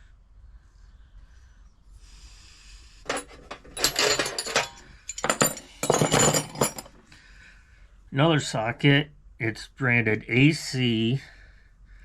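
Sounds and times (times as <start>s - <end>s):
metal tools clinking and rattling: 3.1s - 7.0s.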